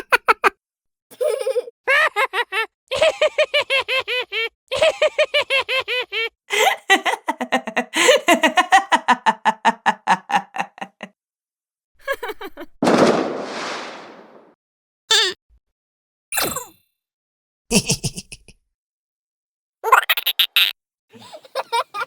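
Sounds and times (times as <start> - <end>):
short noisy burst: 12.8 - 14.5.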